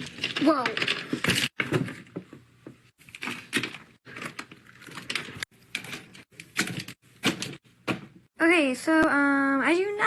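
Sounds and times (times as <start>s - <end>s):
plastic toys clattering and clicking: 0.0s - 2.4s, 3.0s - 7.6s.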